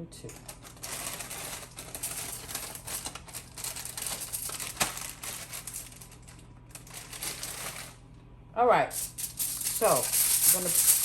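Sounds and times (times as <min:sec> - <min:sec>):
packaging crinkling: 0:00.4 - 0:08.0.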